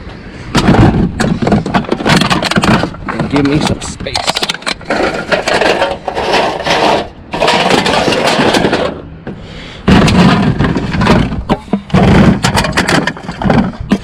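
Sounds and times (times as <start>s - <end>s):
aluminum cans rattling and crinkling: 0.6s - 9.0s, 9.9s - 14.0s.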